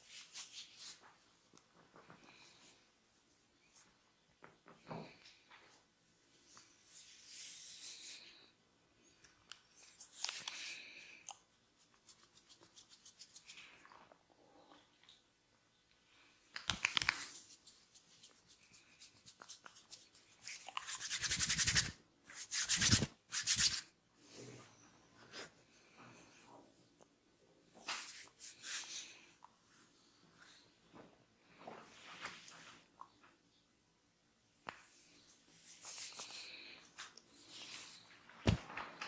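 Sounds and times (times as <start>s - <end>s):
hands rubbing skin and hair: 11.6s - 13.8s, 16.6s - 23.9s, 27.8s - 29.2s, 35.5s - 38.7s.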